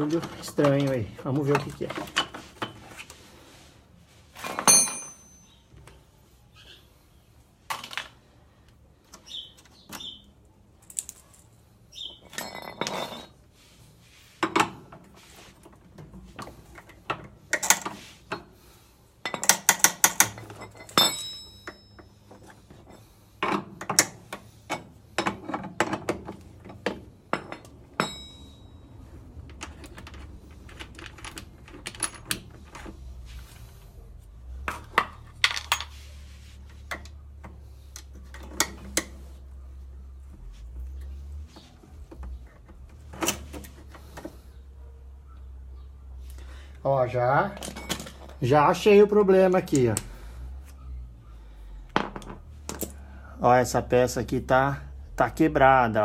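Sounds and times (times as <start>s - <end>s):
tools and metal parts clanking: 0.0s - 3.1s, 4.3s - 6.0s, 10.8s - 13.5s, 14.4s - 18.6s, 19.2s - 33.8s, 34.5s - 36.2s, 36.8s - 39.4s, 40.2s - 44.4s, 47.4s - 50.2s.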